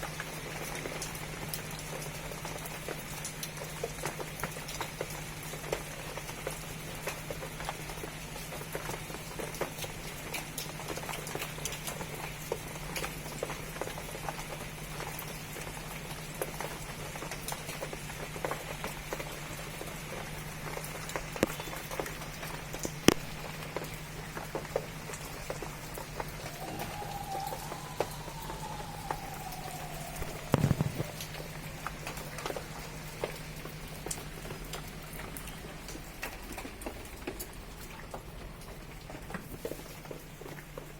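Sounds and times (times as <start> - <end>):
raindrops pattering: 0.0 - 40.9
faint rising and falling tone: 25.9 - 32.6.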